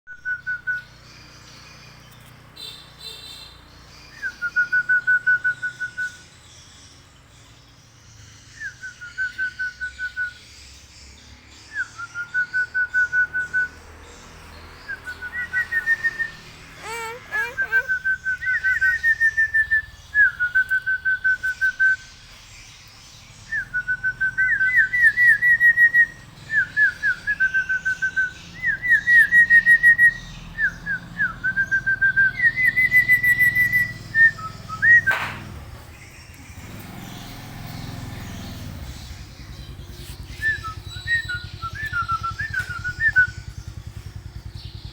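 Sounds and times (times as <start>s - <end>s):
bird whistling: 0.1s - 6.4s, 8.4s - 10.8s, 11.6s - 13.8s, 14.8s - 22.4s, 23.4s - 44.9s
sharp knock: 35.1s - 35.5s.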